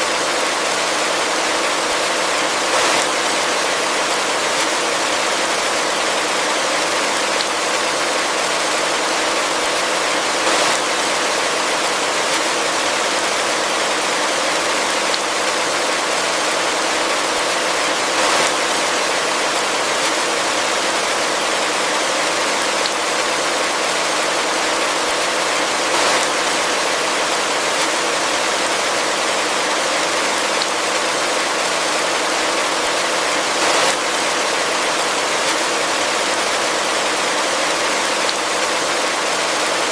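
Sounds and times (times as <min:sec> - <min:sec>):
heavy rain: 0:00.0 - 0:39.9.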